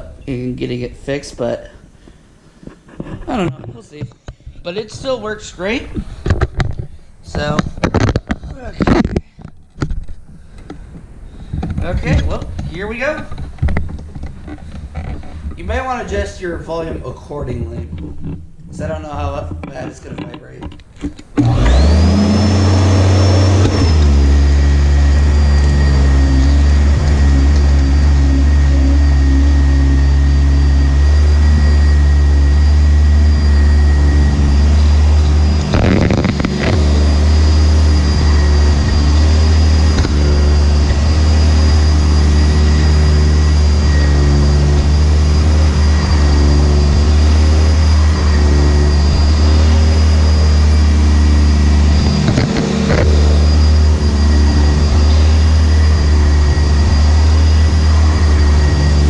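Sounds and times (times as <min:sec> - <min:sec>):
upright vacuum running: 0:21.3 - 0:59.0.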